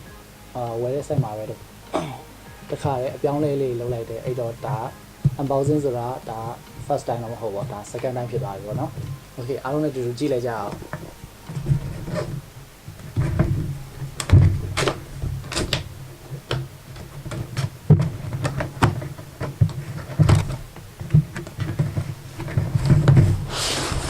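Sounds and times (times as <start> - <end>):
cardboard packaging knocks and thumps: 10.5 - 23.5.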